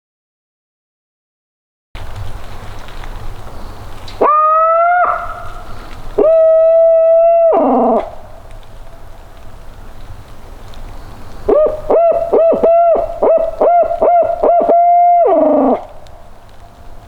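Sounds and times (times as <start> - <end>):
owl hoots imitated by mouth: 4.2 - 8.3, 11.5 - 16.0.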